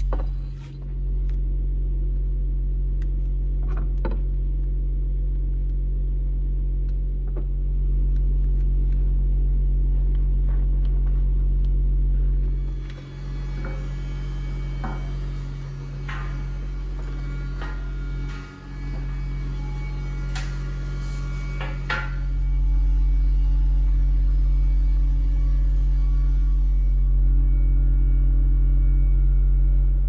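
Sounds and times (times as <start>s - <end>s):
electric motor humming: 7.8s - 30.0s.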